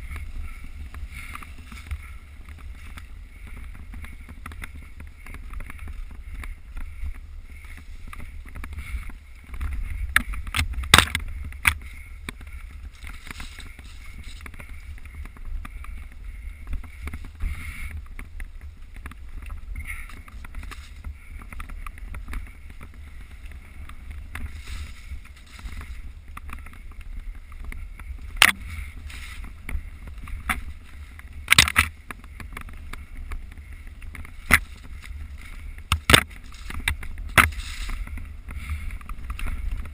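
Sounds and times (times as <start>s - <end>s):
bike ride rumble: 0.0s - 39.9s.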